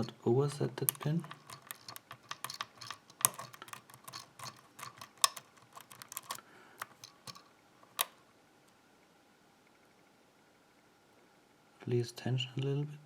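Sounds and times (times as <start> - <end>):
lock pick clicking in lock: 0.8 - 8.2.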